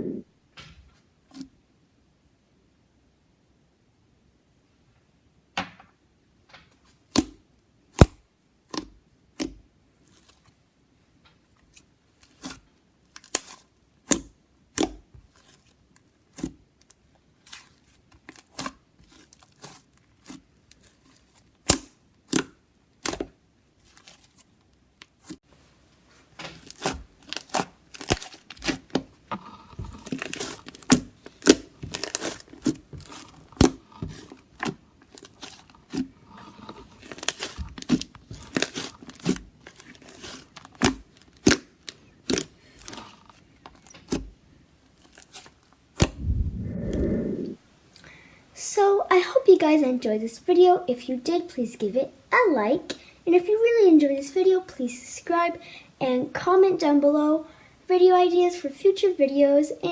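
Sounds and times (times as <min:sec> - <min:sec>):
slime squelching and crackling: 0:26.6 - 0:43.1.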